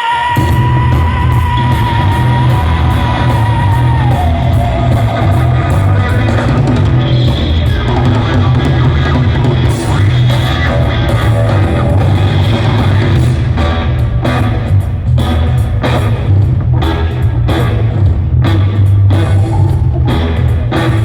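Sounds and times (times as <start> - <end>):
rock band playing live: 0.0 - 21.0.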